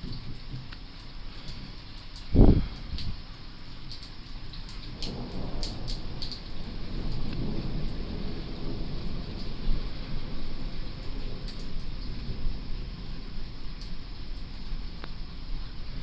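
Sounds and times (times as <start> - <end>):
steady rain: 0.0 - 16.0
thunder rumbling: 2.3 - 3.3, 4.8 - 16.0.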